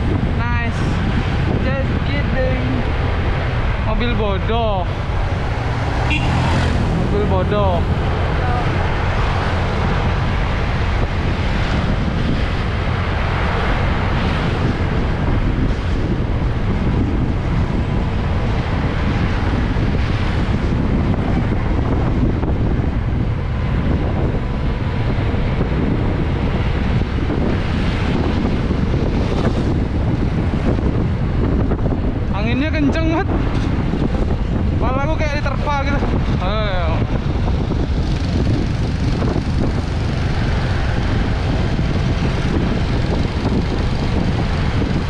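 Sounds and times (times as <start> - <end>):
wind blasting microphone: 0.0 - 45.0
motorcycle engine running: 37.3 - 45.0.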